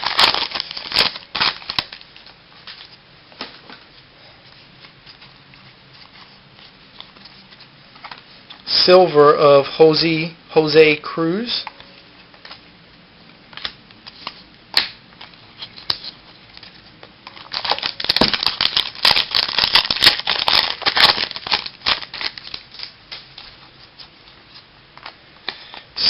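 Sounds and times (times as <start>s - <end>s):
trading cards and packaging crackling: 0.0s - 3.7s, 13.5s - 26.0s.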